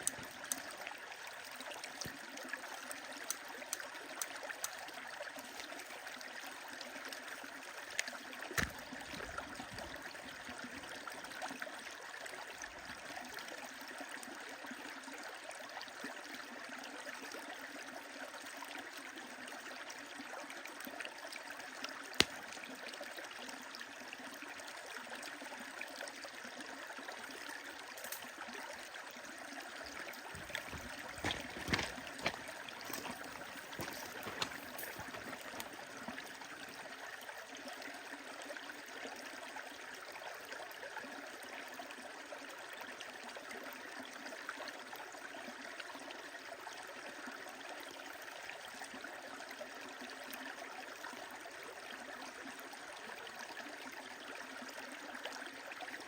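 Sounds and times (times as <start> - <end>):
stream flowing: 0.0 - 42.3
wood fire crackling and popping: 30.3 - 35.8.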